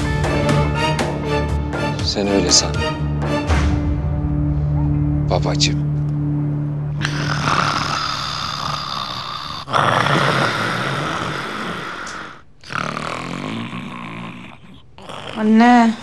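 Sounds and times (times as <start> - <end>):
woman snoring loudly: 7.0 - 16.0.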